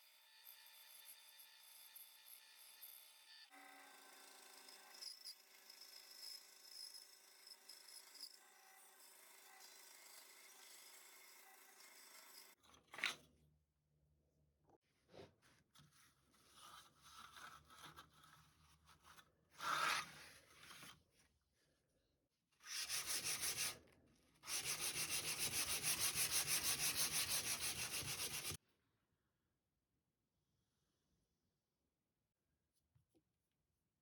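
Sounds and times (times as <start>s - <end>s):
handling and scraping sounds: 15.0s - 21.7s
sandpaper rubbing on wood: 22.7s - 23.7s, 24.5s - 28.6s.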